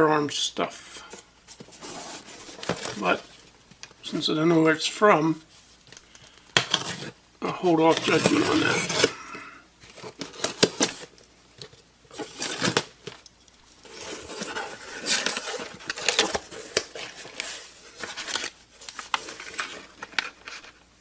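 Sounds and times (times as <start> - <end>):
cardboard box scraping and rustling: 1.6 - 3.3, 12.1 - 12.9, 13.8 - 18.5.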